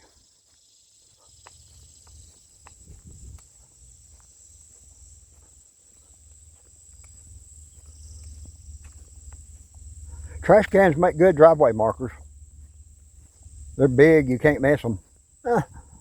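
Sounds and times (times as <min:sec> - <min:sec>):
crickets chirping: 0:00.0 - 0:16.0
faint ticks: 0:00.1 - 0:16.0
low rumble: 0:07.3 - 0:15.2.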